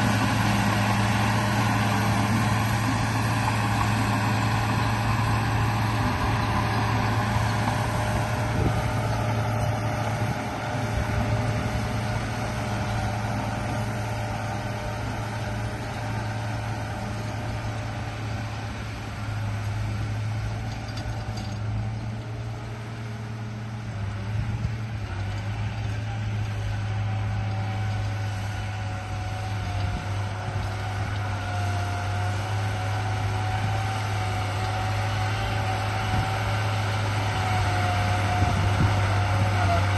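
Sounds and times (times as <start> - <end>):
toy bulldozer motor humming and whining: 24.6 - 39.9.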